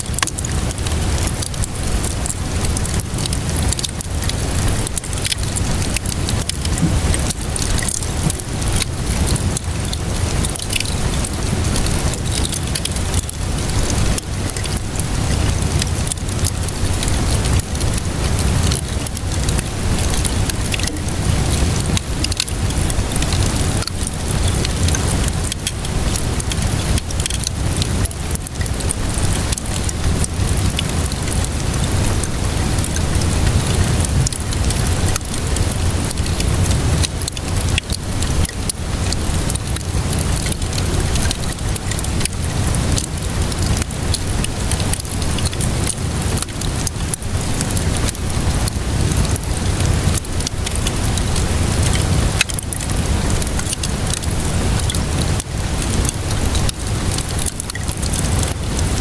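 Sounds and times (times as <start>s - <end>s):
rain hissing: 0.0s - 59.0s
wood fire crackling and popping: 0.0s - 59.0s
low rumble: 19.8s - 24.2s.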